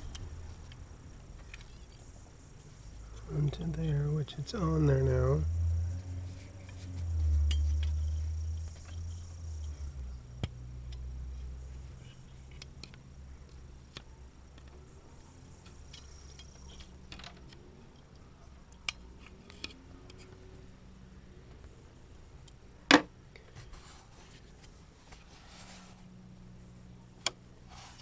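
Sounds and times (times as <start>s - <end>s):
small metallic clicks of parts: 0.0s - 2.1s, 6.4s - 20.7s
low steady hum: 0.0s - 28.0s.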